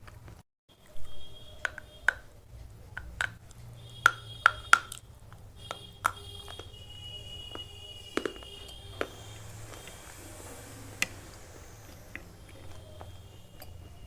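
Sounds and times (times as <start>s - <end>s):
slate pencils crunching: 3.0s - 14.0s.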